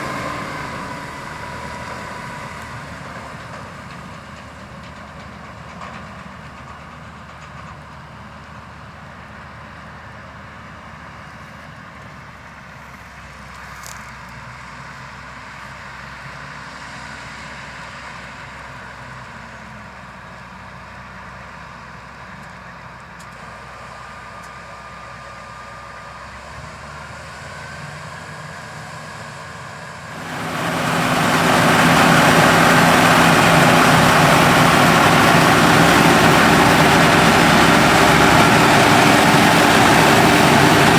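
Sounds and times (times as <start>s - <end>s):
diesel harvest machinery running: 0.0s - 11.1s, 29.7s - 40.9s.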